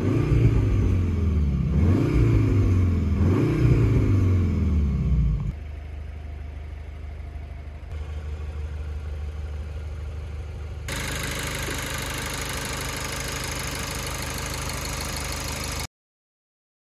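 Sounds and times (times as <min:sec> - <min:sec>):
car engine idling: 0:05.3 - 0:15.9.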